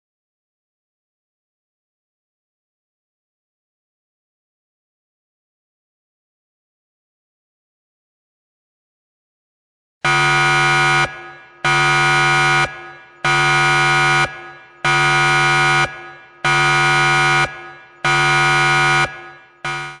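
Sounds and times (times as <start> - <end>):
timer alarm buzzer: 10.0 - 20.0.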